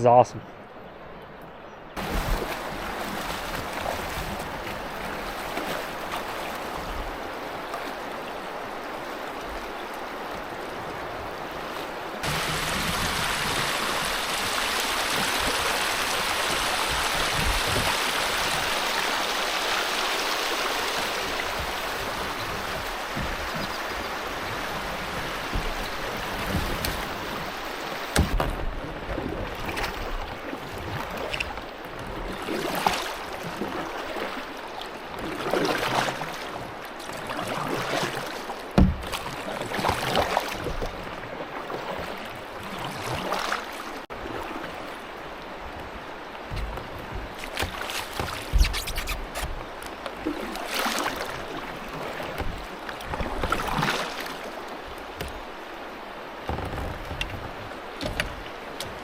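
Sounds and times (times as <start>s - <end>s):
river water rushing over rocks: 2.0s - 28.4s.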